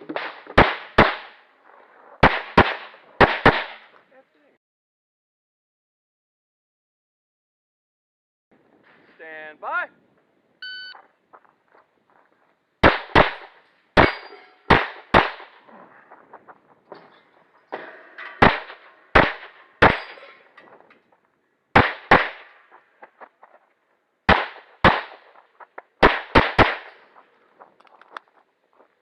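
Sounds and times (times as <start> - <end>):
pistol shots: 0.1 - 1.4, 2.2 - 4.0, 12.8 - 15.7, 18.4 - 20.2, 21.7 - 22.8, 24.3 - 25.4, 26.0 - 27.2.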